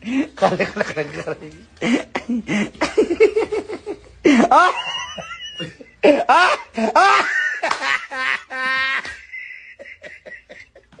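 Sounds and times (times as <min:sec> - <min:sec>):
person laughing: 0:01.8 - 0:11.0
high-pitched squealing laugh: 0:04.3 - 0:10.9.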